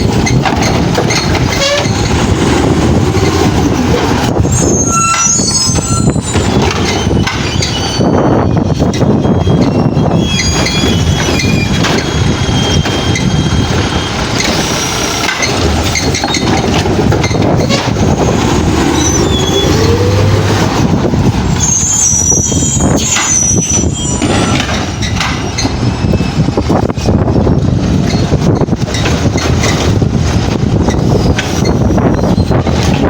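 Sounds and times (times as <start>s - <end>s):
garbage truck engine and machinery: 0.0s - 33.0s
wind buffeting microphone: 0.0s - 33.0s
high metallic squeals: 0.2s - 16.6s, 17.2s - 27.2s.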